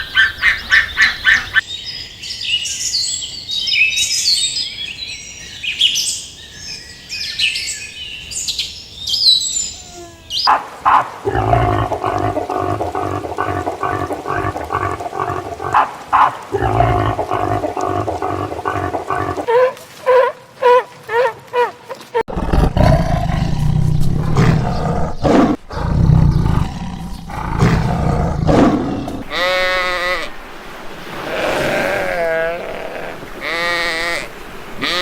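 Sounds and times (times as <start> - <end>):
low rough animal calls: 11.2 - 19.7, 31.0 - 35.0.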